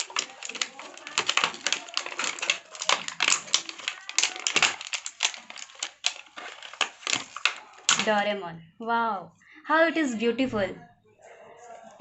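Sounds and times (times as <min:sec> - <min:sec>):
plastic packaging crinkling: 0:00.0 - 0:08.3.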